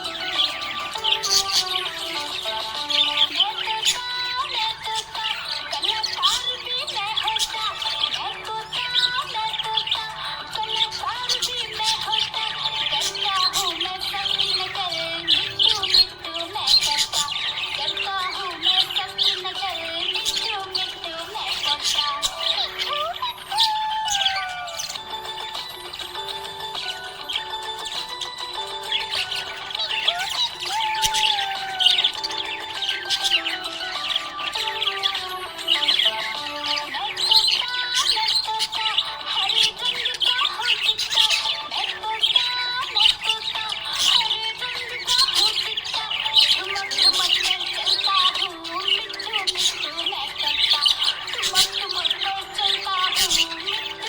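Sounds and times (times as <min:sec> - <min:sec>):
background music: 0:00.0 - 0:54.0
budgerigar chirping: 0:00.0 - 0:54.0.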